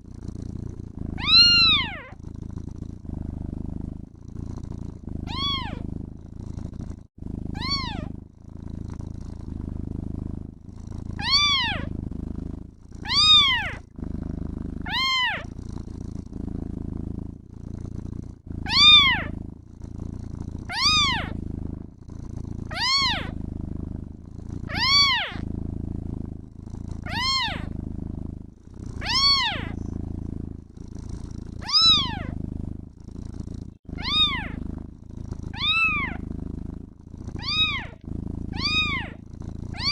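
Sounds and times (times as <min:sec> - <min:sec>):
kitten purring: 0:00.0 - 0:39.9
kitten meowing: 0:01.2 - 0:02.2, 0:05.3 - 0:05.8, 0:07.6 - 0:08.1, 0:11.2 - 0:11.9, 0:13.0 - 0:13.8, 0:14.9 - 0:15.5, 0:18.7 - 0:19.3, 0:20.7 - 0:21.4, 0:22.7 - 0:23.4, 0:24.7 - 0:25.4, 0:27.1 - 0:27.7, 0:29.0 - 0:29.8, 0:31.6 - 0:32.4, 0:34.0 - 0:34.6, 0:35.5 - 0:36.2, 0:37.4 - 0:39.2.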